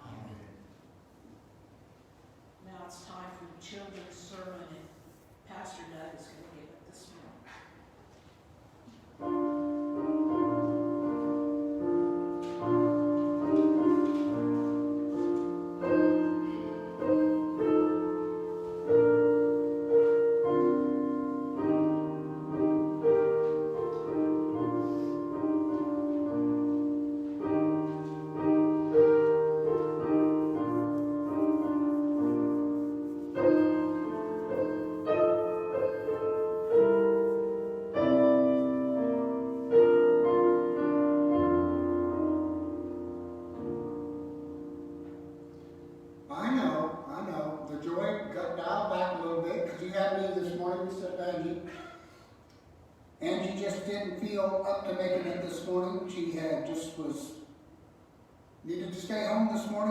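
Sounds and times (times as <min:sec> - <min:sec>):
slow gentle solo piano: 0:09.2 - 0:46.3.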